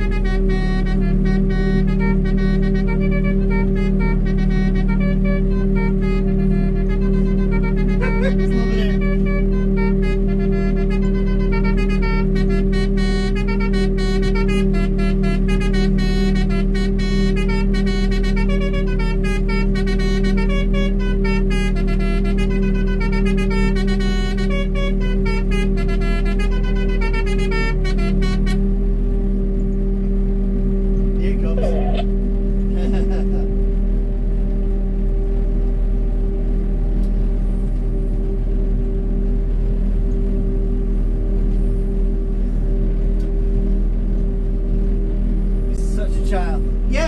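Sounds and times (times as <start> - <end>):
woodwind-like melody: 0.0 - 33.6
low drone: 0.0 - 47.0
musical vehicle air horns: 0.0 - 47.0
steady low hum: 0.0 - 47.0.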